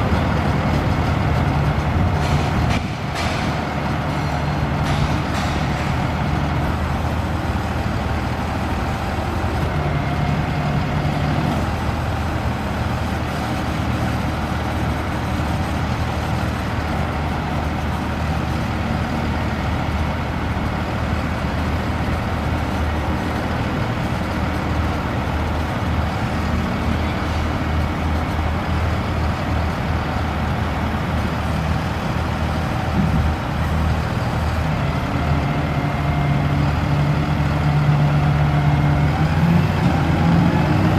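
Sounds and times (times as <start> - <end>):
diesel truck engine running: 0.0 - 40.9.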